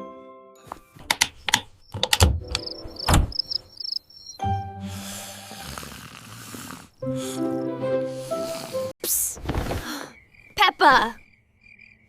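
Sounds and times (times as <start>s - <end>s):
sharp knocks and clicks: 0.7s - 3.6s
cricket chirping: 0.9s - 4.4s, 9.9s - 12.0s.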